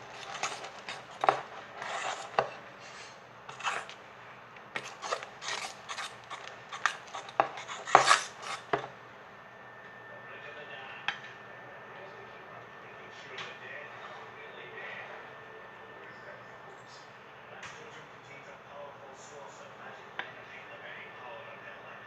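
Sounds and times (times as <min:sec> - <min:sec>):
slime rubbing and scraping: 0:00.0 - 0:04.0, 0:04.8 - 0:08.8.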